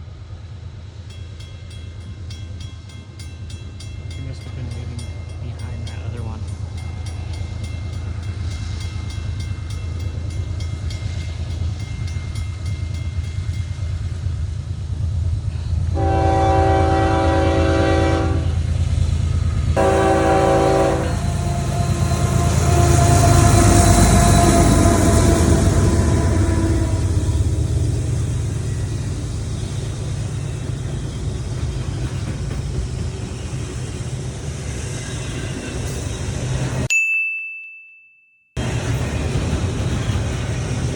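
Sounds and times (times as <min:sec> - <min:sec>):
train rumbling: 0:00.0 - 0:36.9, 0:38.6 - 0:40.9
train horn blasts: 0:15.9 - 0:18.7, 0:19.8 - 0:27.6.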